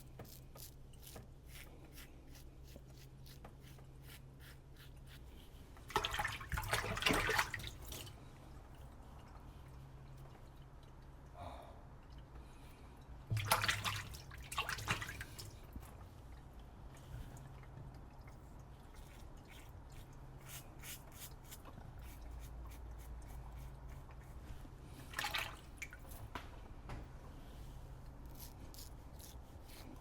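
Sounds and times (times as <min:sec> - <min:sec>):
water splashing and dripping: 0:05.9 - 0:08.2, 0:13.3 - 0:20.4, 0:25.0 - 0:26.2.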